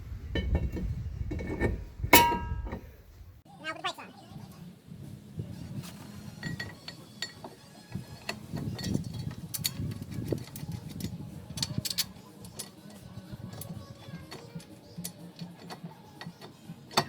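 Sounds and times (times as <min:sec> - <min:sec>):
metallic clinks of tools and parts: 0:06.3 - 0:17.0.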